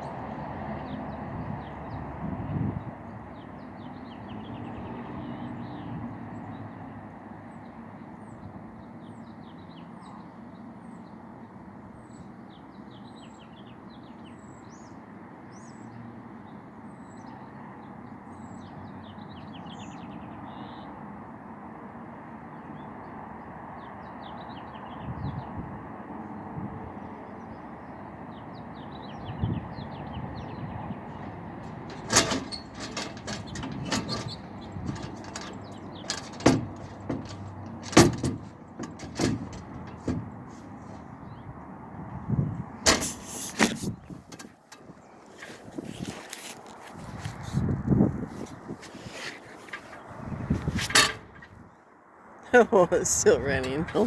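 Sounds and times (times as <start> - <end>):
birds chirping: 28.6 - 41.6.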